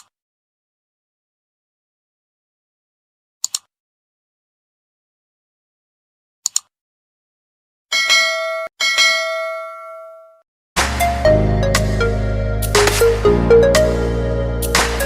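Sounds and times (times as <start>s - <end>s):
bell-like dings: 7.9s - 10.4s.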